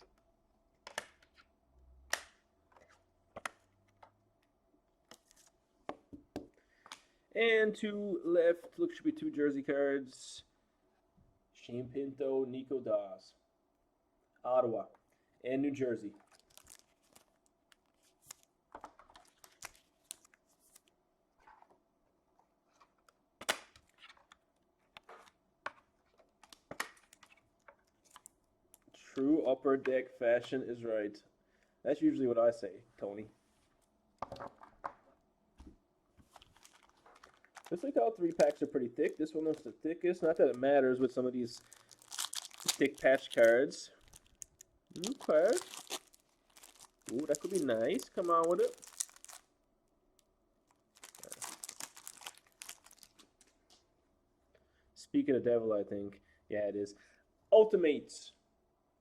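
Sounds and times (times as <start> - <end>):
trading cards and packaging handled: 16.2 - 21.7, 22.6 - 29.2, 35.6 - 49.5, 50.7 - 53.8.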